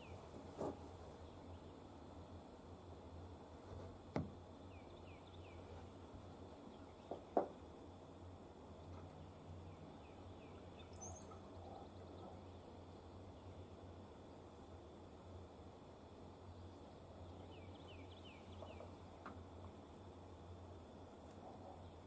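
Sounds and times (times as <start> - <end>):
small birds chirping: 8.8 - 13.6, 16.4 - 19.3.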